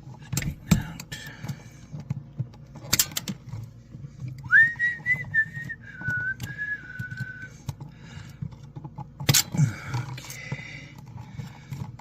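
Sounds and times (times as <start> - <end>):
person whistling a tune: 4.5 - 7.5.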